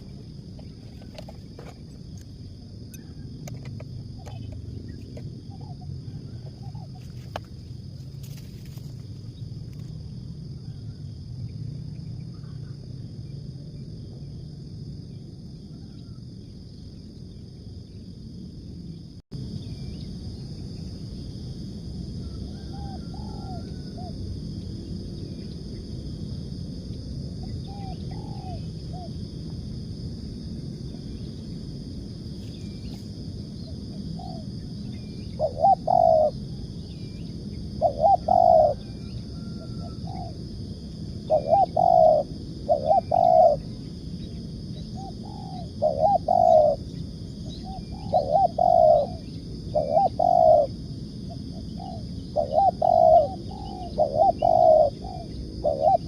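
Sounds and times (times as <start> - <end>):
dove cooing: 2.9 - 7.4, 22.2 - 24.2, 27.4 - 29.2, 33.6 - 36.6, 37.6 - 40.4, 41.2 - 43.9, 44.8 - 56.0.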